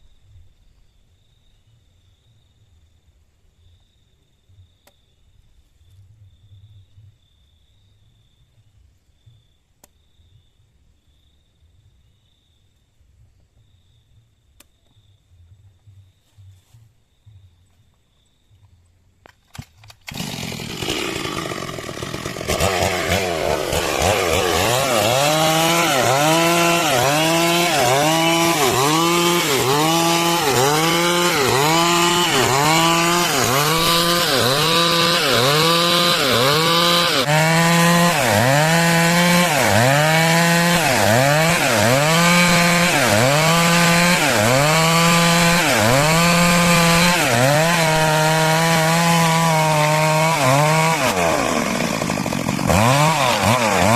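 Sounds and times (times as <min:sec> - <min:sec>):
chainsaw cutting wood: 0:19.4 - 0:53.9.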